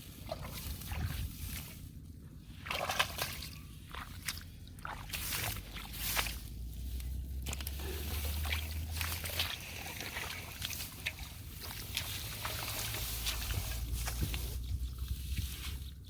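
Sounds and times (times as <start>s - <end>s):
low rumble: 0.0s - 16.0s
shallow water sloshing and splashing: 0.0s - 16.0s
small splashes and ticks: 2.5s - 15.9s.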